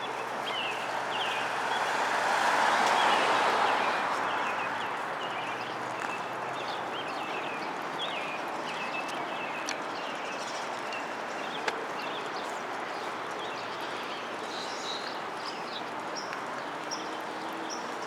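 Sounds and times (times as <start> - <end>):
street noise: 0.0 - 18.0
vehicle passing: 0.3 - 6.8
small birds chirping: 4.4 - 18.0.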